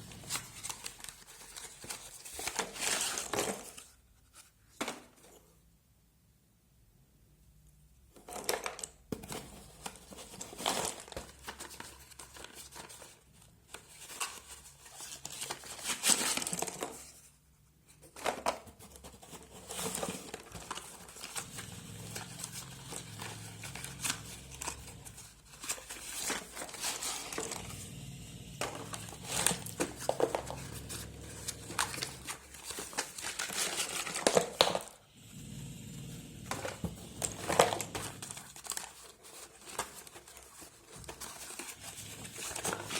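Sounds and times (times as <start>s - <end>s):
packaging crinkling and tearing: 0.0s - 3.9s, 8.4s - 17.2s, 18.2s - 35.0s, 35.6s - 42.9s.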